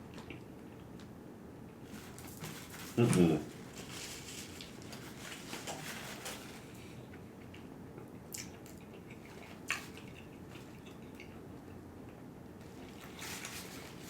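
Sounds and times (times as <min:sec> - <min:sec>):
chewing wet mouth sounds: 0:07.1 - 0:12.2
crisp crunches of fried chicken: 0:08.4 - 0:11.2.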